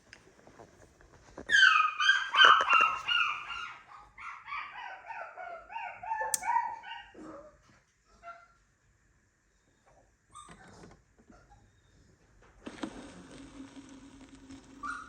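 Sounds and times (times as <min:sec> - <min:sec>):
dog whining and yelping: 0:01.5 - 0:07.4.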